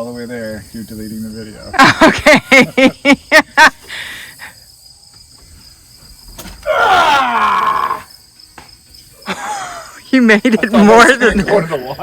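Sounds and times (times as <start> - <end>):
crickets chirping: 0.0 - 12.0
person laughing: 1.8 - 3.9, 9.3 - 10.0
long falling vocal cry: 6.6 - 8.1.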